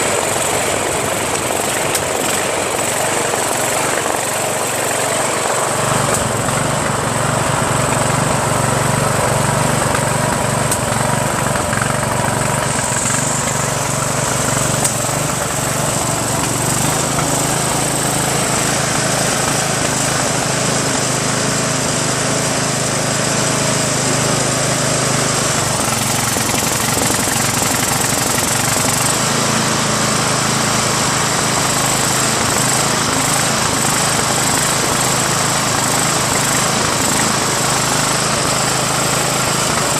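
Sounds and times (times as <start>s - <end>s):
lawn tractor engine running: 0.0s - 39.9s.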